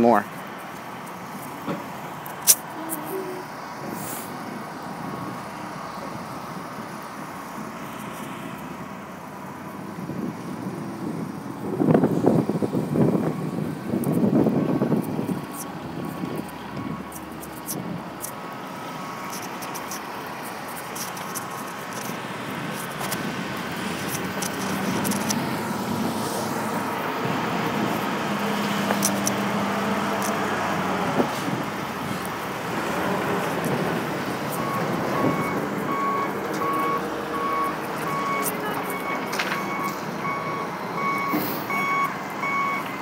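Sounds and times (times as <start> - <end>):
heavy vehicle engine running: 0.3 - 43.0
truck backup alarm beeping: 11.2 - 43.0.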